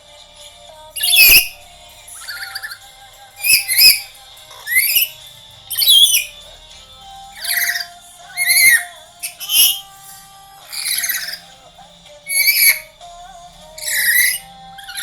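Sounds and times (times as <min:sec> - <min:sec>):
parrot whistled calls: 0:01.0 - 0:06.4, 0:07.4 - 0:09.9, 0:10.7 - 0:11.6, 0:12.3 - 0:13.0, 0:13.8 - 0:15.0.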